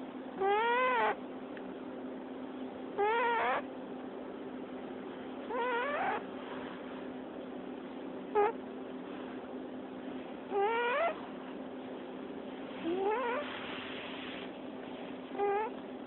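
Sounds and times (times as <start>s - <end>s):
cat squeaky snoring: 0.4s - 1.2s, 3.0s - 3.6s, 5.5s - 6.2s, 8.4s - 8.6s, 10.5s - 11.2s, 12.8s - 13.6s, 15.3s - 15.7s.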